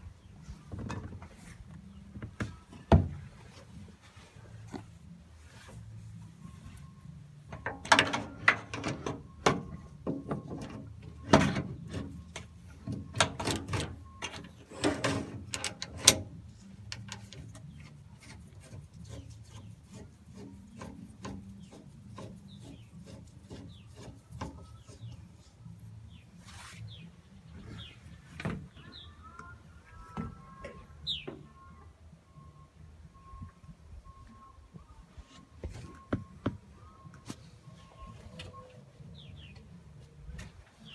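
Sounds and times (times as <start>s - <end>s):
scraping or rubbing: 14.5s - 27.0s.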